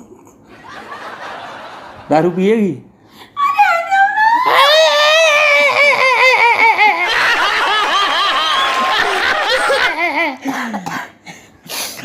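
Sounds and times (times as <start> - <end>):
people laughing: 0.5 - 2.6, 6.4 - 10.5.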